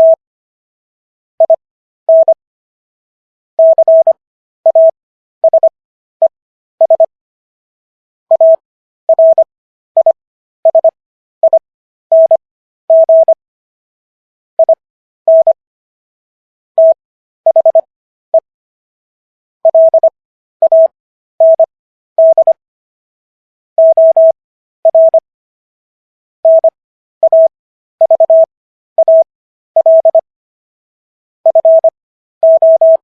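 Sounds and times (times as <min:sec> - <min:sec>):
morse code beeping tone: 0:00.0 - 0:00.2, 0:01.4 - 0:02.4, 0:03.6 - 0:07.1, 0:08.3 - 0:13.4, 0:14.6 - 0:15.6, 0:16.8 - 0:18.5, 0:19.6 - 0:22.6, 0:23.8 - 0:25.2, 0:26.4 - 0:30.3, 0:31.5 - 0:33.0.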